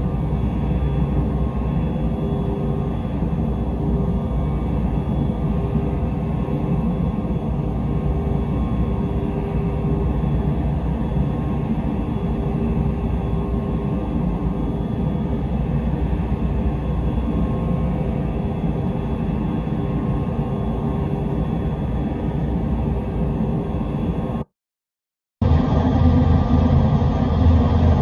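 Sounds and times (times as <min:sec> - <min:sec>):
low rumbling drone: 0:25.4 - 0:28.0.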